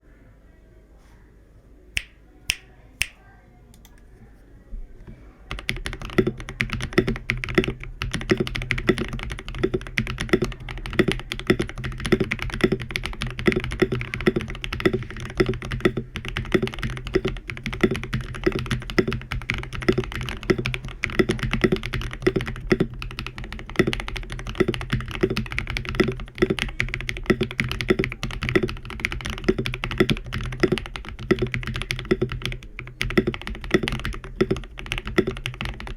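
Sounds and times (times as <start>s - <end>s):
mechanical keyboard typing: 5.5s - 35.9s.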